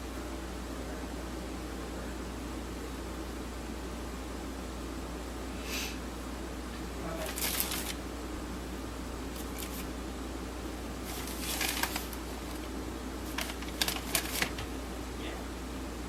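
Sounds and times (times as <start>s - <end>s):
steady low hum: 0.0s - 16.0s
scraping handling noises: 11.0s - 12.7s.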